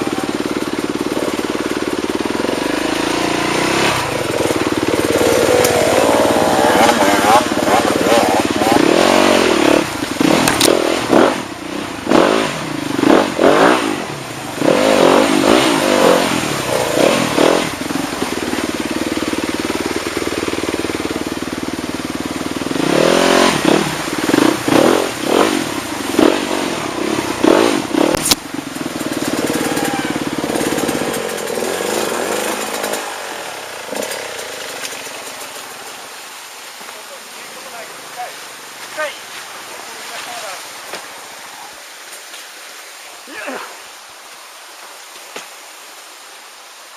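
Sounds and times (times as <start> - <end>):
motorcycle engine revving: 0.0 - 36.9.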